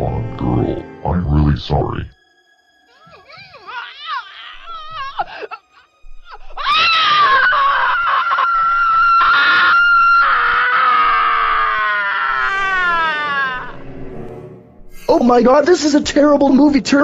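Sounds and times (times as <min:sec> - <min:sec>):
short wavering cries: 0:02.9 - 0:13.9
high-pitched scream: 0:06.5 - 0:13.8.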